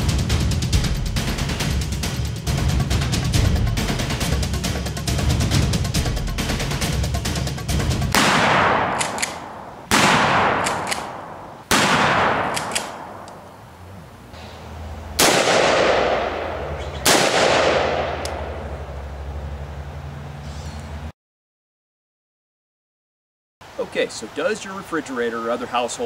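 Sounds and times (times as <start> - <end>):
loud gunshots with echo: 8.1 - 13.3, 15.2 - 18.8
low steady hum: 8.6 - 21.1.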